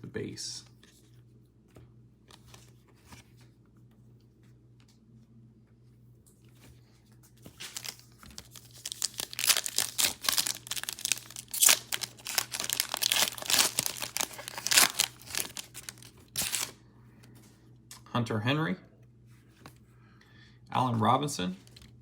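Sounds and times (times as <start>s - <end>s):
plastic wrappers crinkling and tearing: 7.5s - 16.8s.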